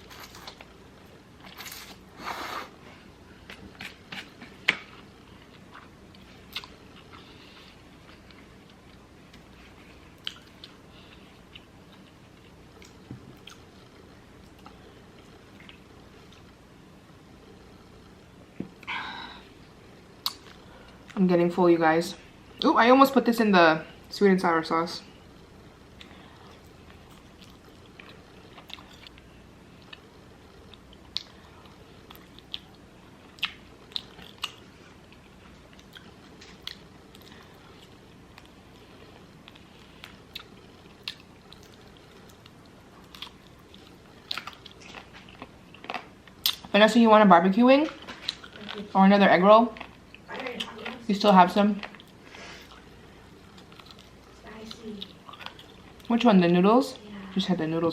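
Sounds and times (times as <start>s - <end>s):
person chewing food: 0.0s - 16.6s, 25.9s - 46.7s, 48.0s - 48.9s, 49.7s - 50.8s, 51.8s - 56.1s.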